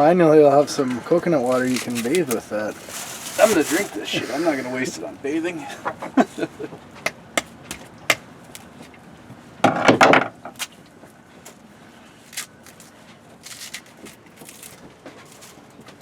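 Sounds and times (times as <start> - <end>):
coconut husk tearing: 0.8 - 5.0, 12.1 - 16.0.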